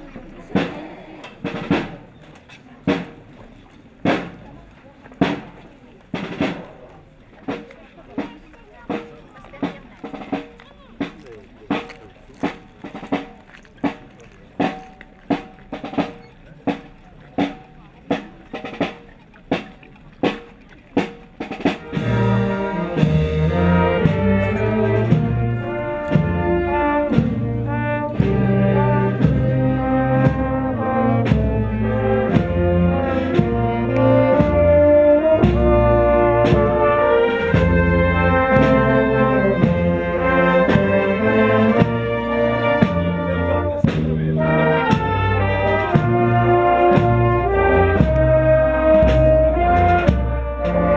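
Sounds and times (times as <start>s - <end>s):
drum beating: 0.1s - 50.9s
trumpets and trombones playing: 21.4s - 50.9s.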